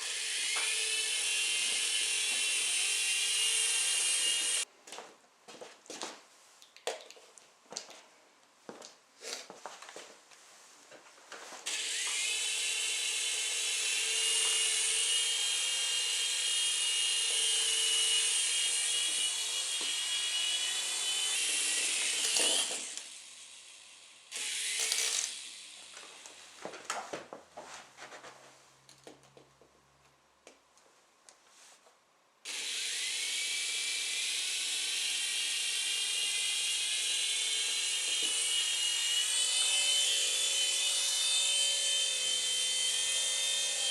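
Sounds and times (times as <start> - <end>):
toy helicopter motor whining: 0.0 - 4.7, 11.7 - 26.4, 32.5 - 43.9.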